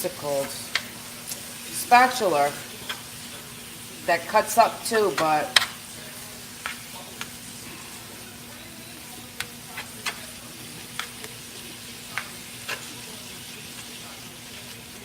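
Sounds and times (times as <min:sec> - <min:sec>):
meat sizzling in a frying pan: 0:00.0 - 0:15.0
spatula clicking against a pan: 0:05.2 - 0:05.8, 0:10.9 - 0:11.4, 0:12.1 - 0:12.9.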